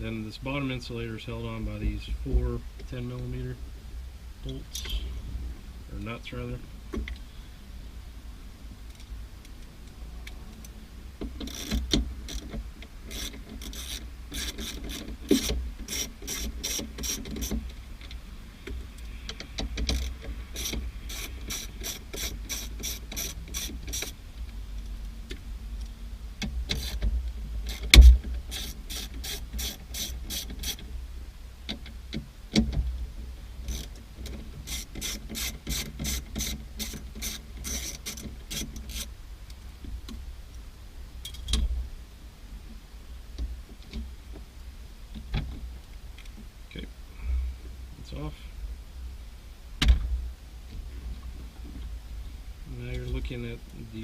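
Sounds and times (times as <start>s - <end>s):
socket ratchet clicking: 19.4s - 24.2s, 34.6s - 39.1s.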